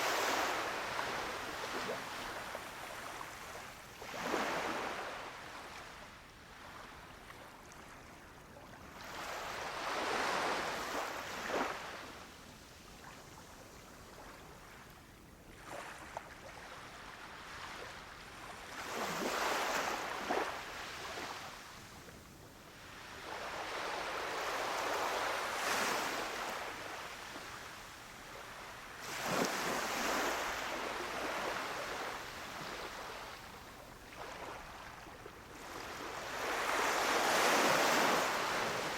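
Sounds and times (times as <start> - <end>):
small waves breaking on beach: 0.0 - 38.9.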